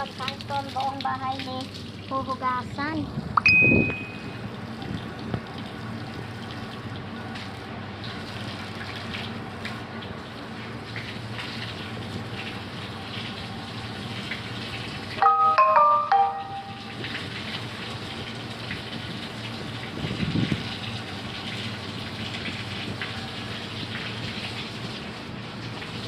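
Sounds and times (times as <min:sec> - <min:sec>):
running water splashing: 0:00.0 - 0:26.0
bright chiming notes: 0:03.4 - 0:04.4, 0:15.2 - 0:17.0.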